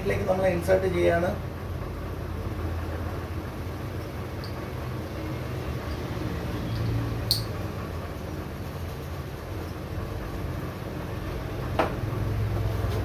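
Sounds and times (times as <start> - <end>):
sharp metallic click: 7.3 - 7.6.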